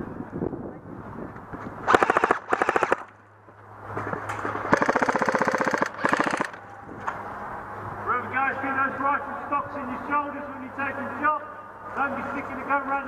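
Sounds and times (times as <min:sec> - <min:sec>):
airsoft rifle firing bursts: 0:01.9 - 0:03.1, 0:04.7 - 0:06.6.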